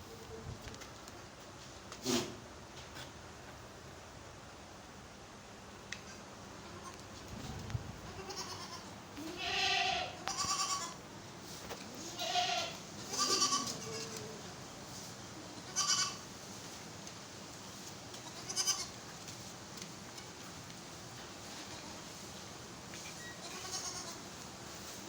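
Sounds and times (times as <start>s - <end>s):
goats bleating: 8.1s - 11.0s, 11.9s - 14.4s, 15.6s - 16.2s, 18.2s - 19.0s, 23.4s - 24.2s.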